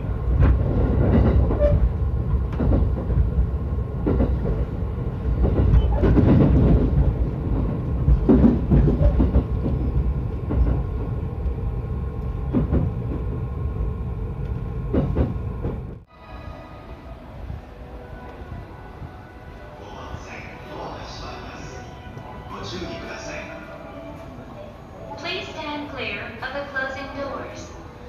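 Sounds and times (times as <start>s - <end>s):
train interior low rumble: 0.0s - 28.0s
wheels clacking over rail joints: 5.3s - 10.9s.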